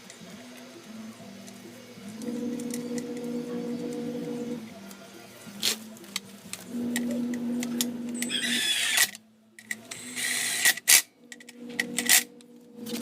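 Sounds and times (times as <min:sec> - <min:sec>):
ratchet wrench whirring: 0:06.8 - 0:09.1, 0:10.0 - 0:13.0.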